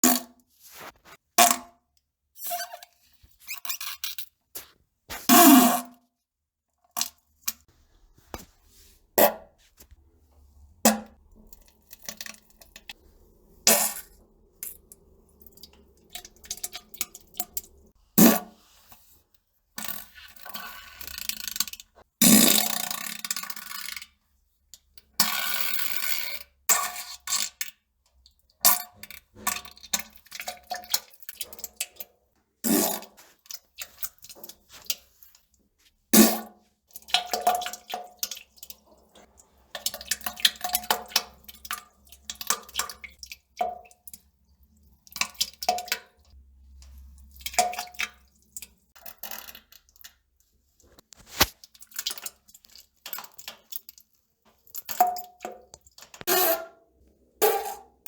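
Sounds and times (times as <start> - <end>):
farts and plops on a toilet: 5.2 - 6.0, 16.1 - 18.8, 19.8 - 24.0, 28.6 - 31.9, 32.6 - 34.9, 36.1 - 38.4, 54.9 - 58.0.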